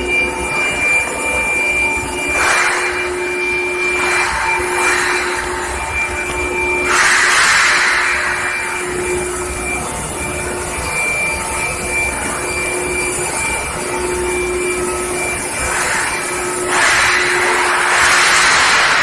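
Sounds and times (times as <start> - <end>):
industrial machine noise: 0.0 - 19.0
hiss: 6.9 - 8.6, 15.6 - 19.0.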